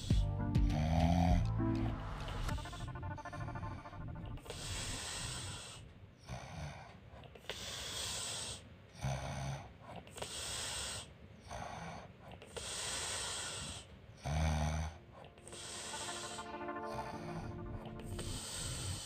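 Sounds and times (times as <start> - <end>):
woman snoring: 0.7 - 1.3
breathy hissing breath: 4.5 - 9.2, 10.1 - 16.5.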